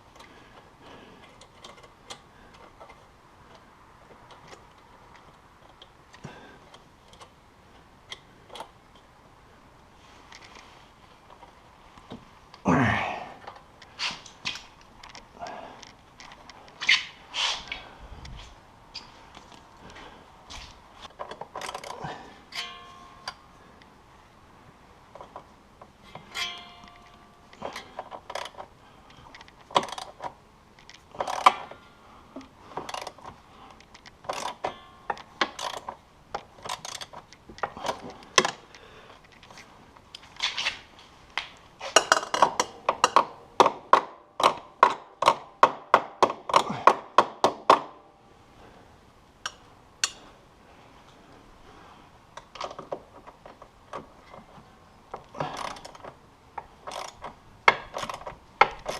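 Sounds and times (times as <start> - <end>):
hand tools clinking on metal: 21.3 - 23.4, 26.2 - 28.6.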